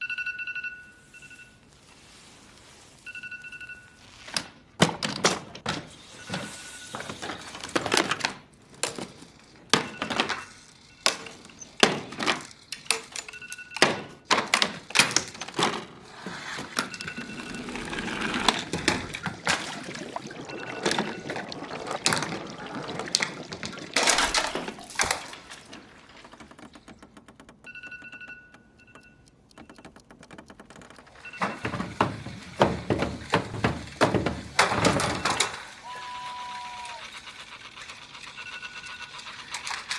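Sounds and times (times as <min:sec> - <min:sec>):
phone alarm beeping: 0:00.0 - 0:02.2, 0:03.0 - 0:04.4, 0:06.0 - 0:07.7, 0:09.7 - 0:11.7, 0:13.2 - 0:14.3, 0:16.5 - 0:22.6, 0:27.5 - 0:30.4, 0:31.0 - 0:32.1, 0:34.8 - 0:35.6, 0:38.2 - 0:39.5
loud thumps and knocks: 0:29.6 - 0:35.3.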